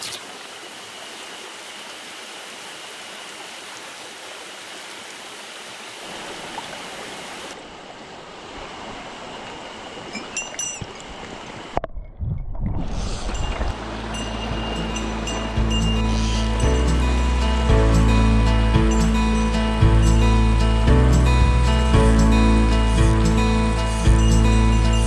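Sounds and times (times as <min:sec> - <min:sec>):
stream water rushing: 0:00.0 - 0:11.8, 0:13.7 - 0:25.0
music: 0:13.8 - 0:25.0.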